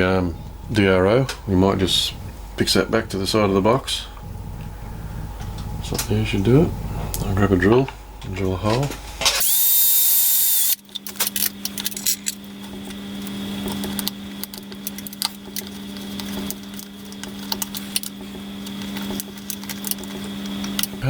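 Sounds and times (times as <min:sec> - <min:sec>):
steady low hum: 0:00.0 - 0:21.0
metal parts and tools clinking: 0:10.8 - 0:12.4.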